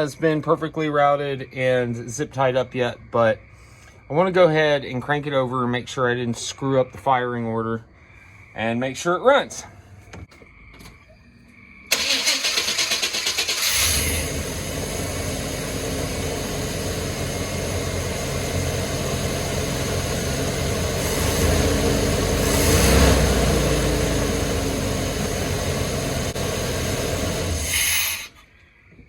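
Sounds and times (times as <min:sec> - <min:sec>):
pickup engine starting and running: 0:11.7 - 0:28.5.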